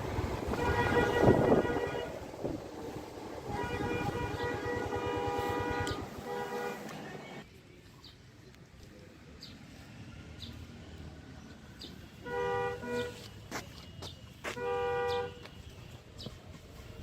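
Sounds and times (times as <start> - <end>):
vehicle horn honking: 0.5 - 2.2, 3.5 - 6.9, 12.2 - 13.3, 14.4 - 15.8.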